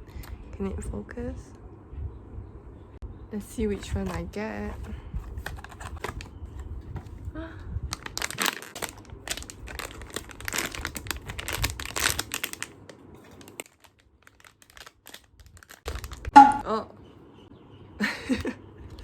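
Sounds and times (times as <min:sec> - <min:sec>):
plastic packaging crinkling: 0:03.8 - 0:07.2, 0:07.9 - 0:16.4.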